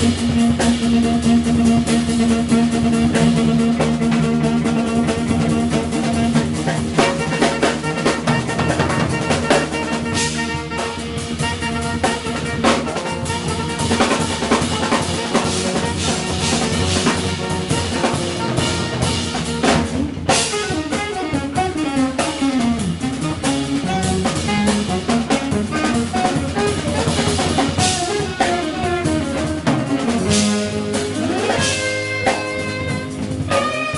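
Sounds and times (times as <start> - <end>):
busy drumming: 0.0 - 33.9
electric bass: 0.0 - 33.9
electric guitar lead: 0.0 - 33.9
saxophone: 0.0 - 33.9.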